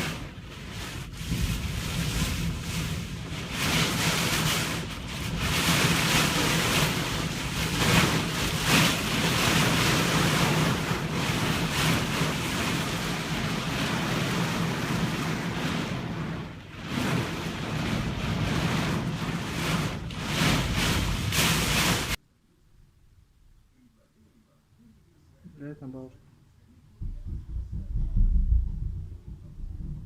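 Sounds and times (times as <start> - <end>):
faint low hum: 22.2 - 30.0
strong wind rushing: 27.0 - 30.0
wind buffeting microphone: 27.0 - 30.0.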